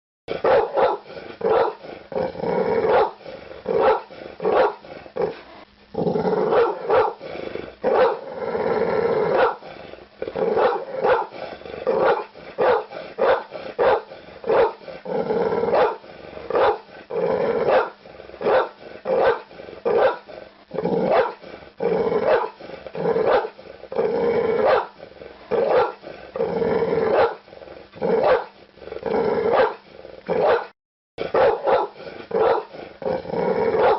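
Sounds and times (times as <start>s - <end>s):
dog barking: 0.4s - 1.8s, 2.9s - 3.2s, 3.8s - 4.8s, 6.5s - 7.2s, 7.9s - 8.2s, 9.3s - 9.6s, 10.6s - 11.4s, 12.0s - 14.8s, 15.7s - 16.8s, 17.7s - 20.3s, 21.1s - 21.4s, 22.2s - 22.6s, 23.2s - 23.6s, 24.6s - 25.0s, 25.6s - 26.0s, 27.1s - 27.4s, 28.2s - 28.5s, 29.5s - 29.8s, 30.4s - 32.8s.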